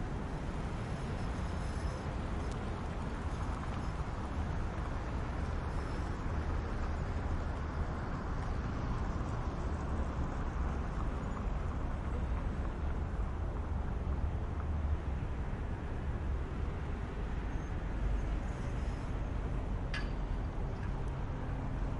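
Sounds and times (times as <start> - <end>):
light traffic rumble: 0.0 - 21.9.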